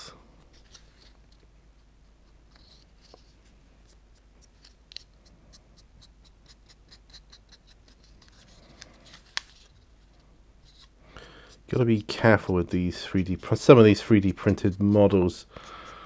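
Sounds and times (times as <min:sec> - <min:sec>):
paintbrush scratchy strokes: 0:11.6 - 0:16.0.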